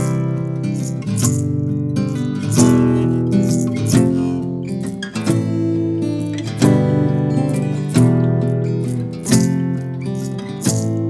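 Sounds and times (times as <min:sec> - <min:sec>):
shaker rattle: 0:00.0 - 0:05.6, 0:06.2 - 0:11.0
acoustic guitar strummed: 0:00.0 - 0:11.0.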